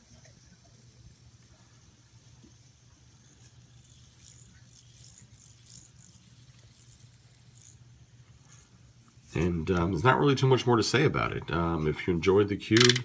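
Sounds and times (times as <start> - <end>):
fidget spinner rattling clicks: 0.0 - 9.9, 12.6 - 13.0.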